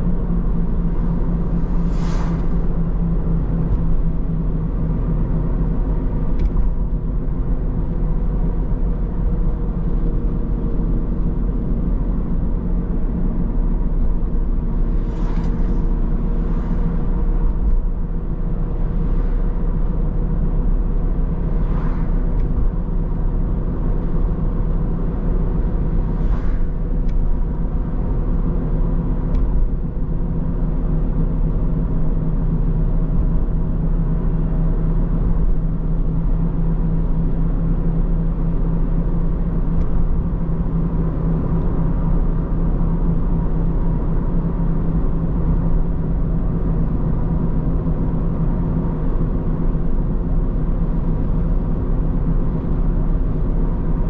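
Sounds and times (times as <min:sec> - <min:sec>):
car road and engine rumble: 0:00.0 - 0:54.0
short whooshes: 0:00.9 - 0:04.0, 0:14.8 - 0:19.9, 0:21.4 - 0:22.9, 0:25.9 - 0:27.1.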